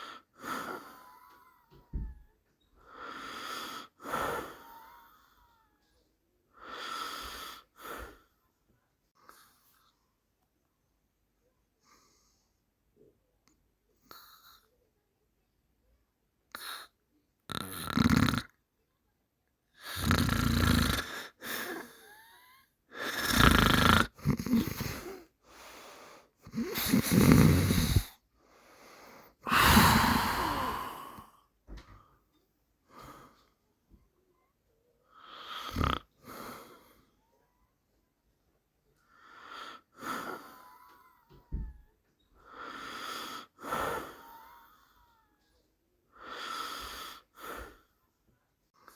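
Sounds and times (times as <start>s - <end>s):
person snoring: 17.5s - 18.5s, 19.8s - 22.4s, 23.0s - 25.2s, 26.4s - 28.2s, 29.4s - 31.3s, 35.3s - 36.5s.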